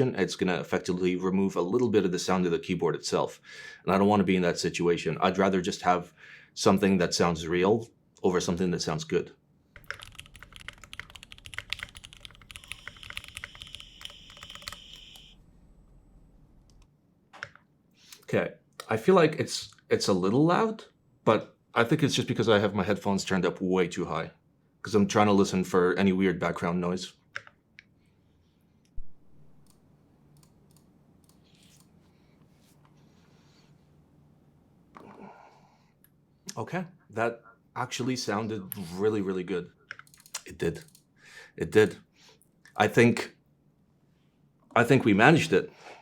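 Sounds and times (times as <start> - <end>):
low background hum: 0.0 - 46.0
typing on keyboard: 9.8 - 15.3.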